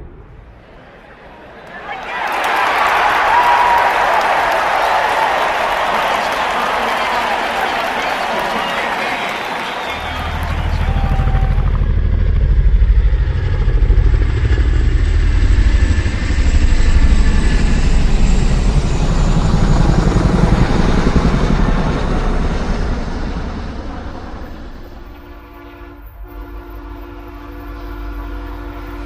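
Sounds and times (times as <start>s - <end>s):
loud vehicle passing: 10.0s - 16.2s.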